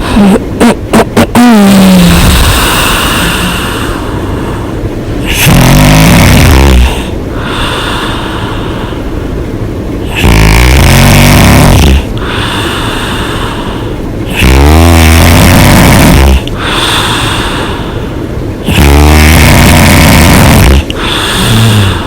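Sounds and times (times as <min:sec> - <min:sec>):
woman breathing: 0:00.0 - 0:00.6, 0:01.8 - 0:05.0, 0:06.8 - 0:09.5, 0:12.0 - 0:14.1, 0:16.4 - 0:18.3, 0:20.8 - 0:22.0
woman snoring loudly: 0:00.0 - 0:03.8, 0:05.2 - 0:07.9, 0:10.1 - 0:13.1, 0:14.3 - 0:17.8, 0:18.6 - 0:22.0.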